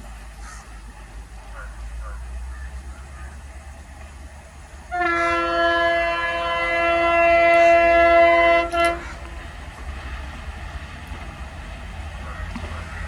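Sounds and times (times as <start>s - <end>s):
locomotive horn blast: 4.9s - 10.2s.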